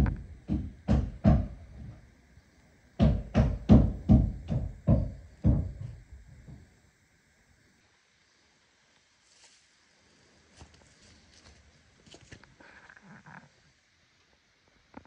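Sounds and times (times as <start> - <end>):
hammer blows on wood: 0.0 - 2.0, 3.0 - 6.6.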